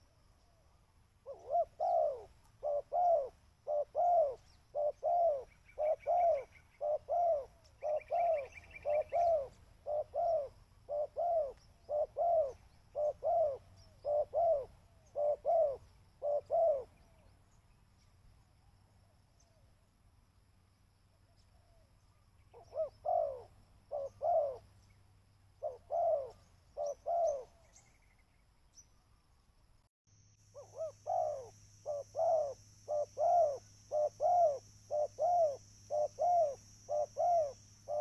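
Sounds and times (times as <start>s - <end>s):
dove cooing: 1.2s - 17.2s, 22.5s - 24.7s, 25.6s - 27.8s, 30.6s - 38.0s.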